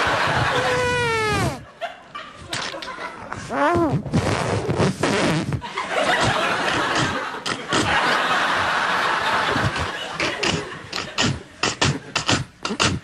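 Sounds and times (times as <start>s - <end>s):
audience laughing: 0.0s - 3.5s, 5.6s - 12.1s
beatboxing into a microphone: 0.3s - 1.6s, 3.3s - 5.6s, 6.2s - 8.0s, 9.5s - 13.0s.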